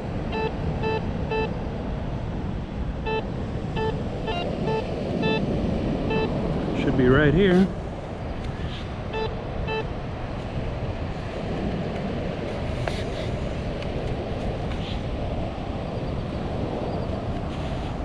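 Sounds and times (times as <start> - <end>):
wind: 0.0 - 18.0
metal detector beeps: 0.3 - 1.6, 3.0 - 5.4, 6.1 - 6.3, 9.1 - 9.9.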